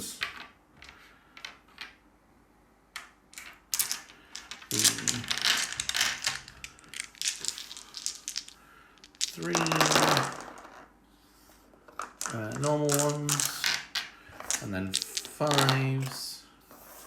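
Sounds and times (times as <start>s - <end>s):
dice clattering on tabletop: 3.0s - 10.9s, 11.9s - 16.3s.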